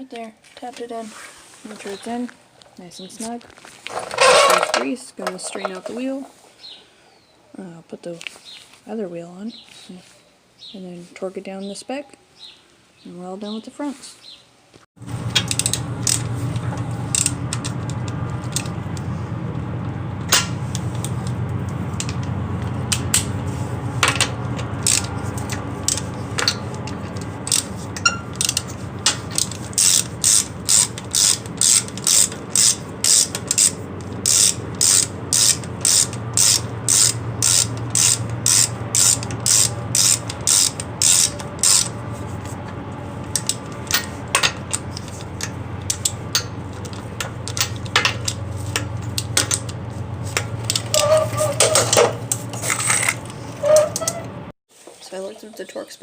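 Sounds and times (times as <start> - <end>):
steady low hum: 15.0 - 54.6
hand ratchet clicking: 15.4 - 18.7, 24.1 - 42.0, 43.2 - 54.2.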